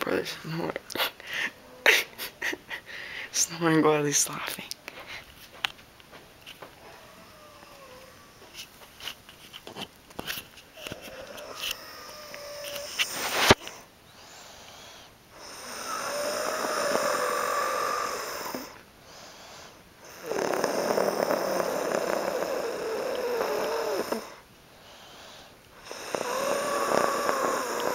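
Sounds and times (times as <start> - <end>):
quiet breaths: 0.3 - 5.7, 6.4 - 27.9
man snoring: 7.0 - 8.4, 10.8 - 13.6, 15.4 - 24.4, 25.2 - 27.9.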